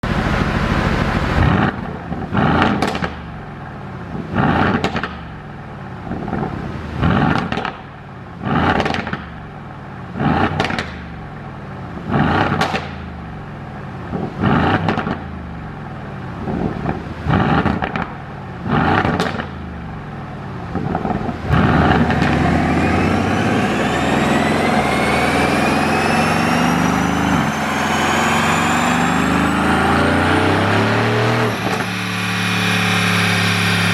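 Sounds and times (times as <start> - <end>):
exhaust pops and crackles: 0.3 - 3.5, 4.1 - 5.5, 6.1 - 9.4, 10.2 - 11.2, 12.0 - 13.2, 14.0 - 15.4, 16.4 - 19.9, 20.7 - 22.4
car engine revving: 10.2 - 11.2, 12.0 - 13.3, 16.5 - 33.9.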